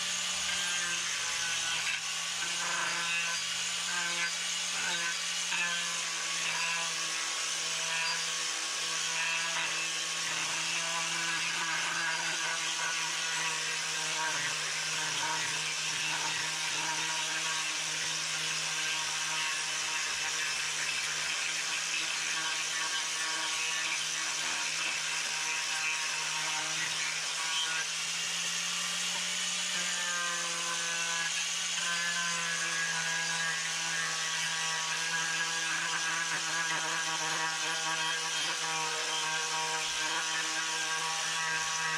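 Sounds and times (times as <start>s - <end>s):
power carving tool on wood: 0.0s - 41.9s.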